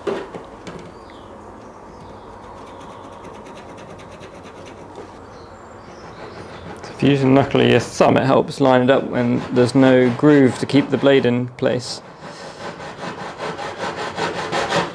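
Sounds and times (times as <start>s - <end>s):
hacksaw cutting metal tube: 8.7s - 14.9s.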